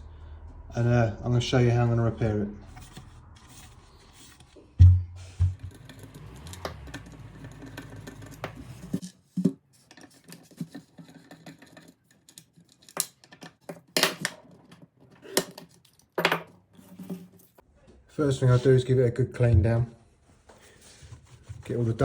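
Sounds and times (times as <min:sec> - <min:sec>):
low hum: 0:00.0 - 0:09.0
low thump: 0:04.8 - 0:05.7
objects clicking and tapping: 0:04.8 - 0:17.6.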